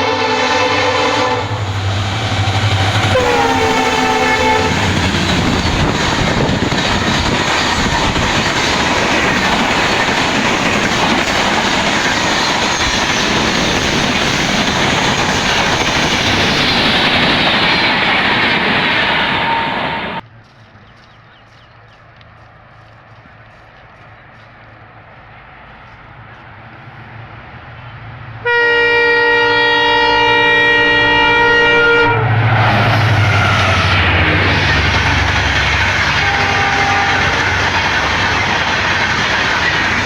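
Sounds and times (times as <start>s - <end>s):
locomotive horn blasts: 0.0s - 1.7s, 3.0s - 5.0s, 28.4s - 32.4s, 36.1s - 37.6s
wheels roaring on rails: 0.0s - 40.0s.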